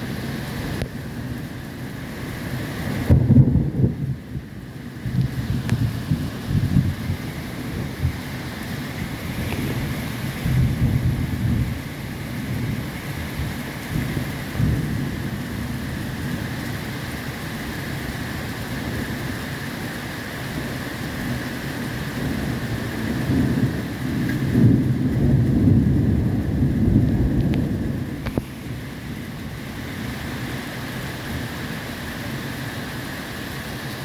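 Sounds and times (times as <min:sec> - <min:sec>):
steady rain: 0:00.0 - 0:34.0
thunder rumbling: 0:00.0 - 0:34.0.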